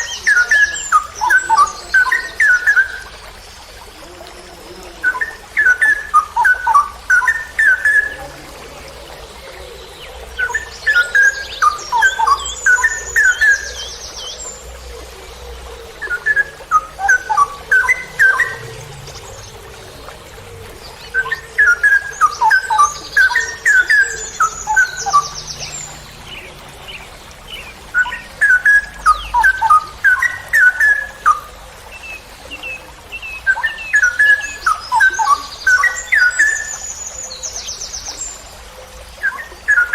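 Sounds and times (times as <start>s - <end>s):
bird whistled song: 5.0s - 8.3s, 9.8s - 14.7s, 16.0s - 26.6s, 27.5s - 38.4s, 39.2s - 39.9s.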